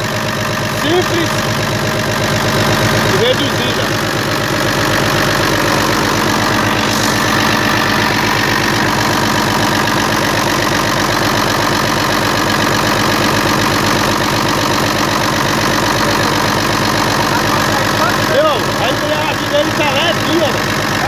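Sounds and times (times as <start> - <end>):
diesel truck engine idling: 0.0 - 21.0.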